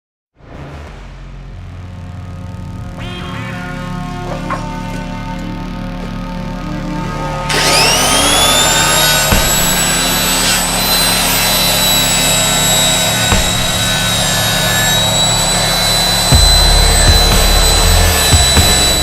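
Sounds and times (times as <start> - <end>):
power tool motor whining: 7.3 - 19.0.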